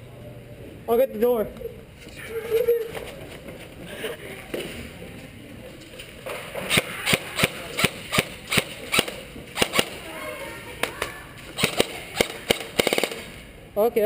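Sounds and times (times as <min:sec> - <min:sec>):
airsoft gun shots: 0:06.6 - 0:10.0, 0:11.6 - 0:13.4.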